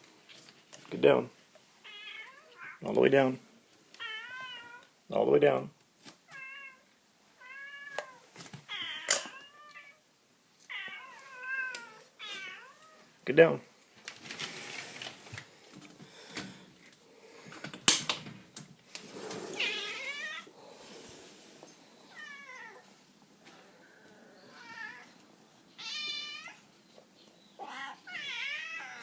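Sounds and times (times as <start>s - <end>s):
cats meowing: 1.8s - 2.8s, 4.0s - 4.9s, 6.3s - 10.0s, 10.7s - 13.2s, 19.1s - 20.6s, 21.9s - 29.0s.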